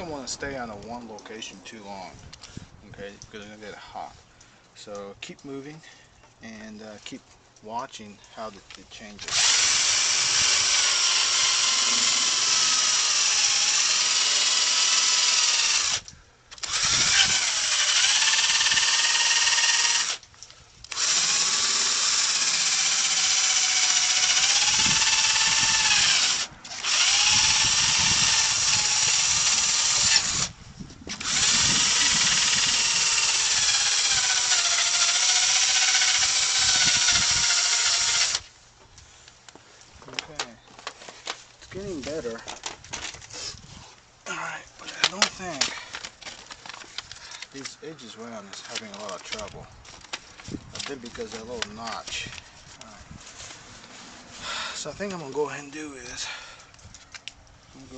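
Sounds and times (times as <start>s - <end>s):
power drill whining: 9.3s - 20.2s, 20.9s - 38.5s.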